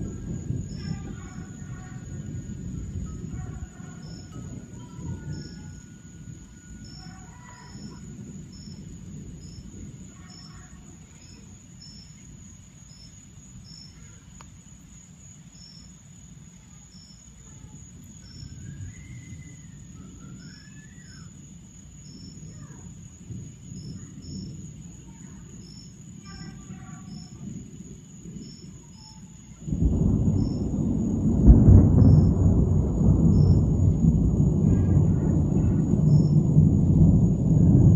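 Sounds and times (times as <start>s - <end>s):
high insect drone: 0.0s - 37.9s
insects chirping: 0.0s - 37.9s
low rumbling noise: 29.8s - 37.9s.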